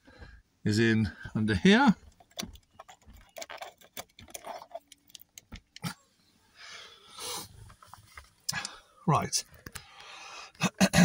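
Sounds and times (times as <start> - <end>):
handling clicks and taps: 2.0 - 5.9.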